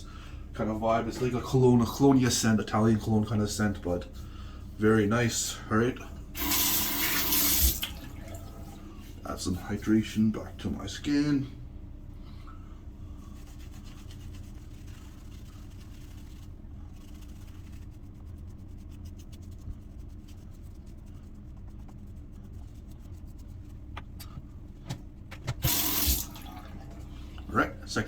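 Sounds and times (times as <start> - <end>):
steady low hum: 0.0 - 28.0
shaving brush rubbing on skin: 13.2 - 24.0, 25.6 - 26.4.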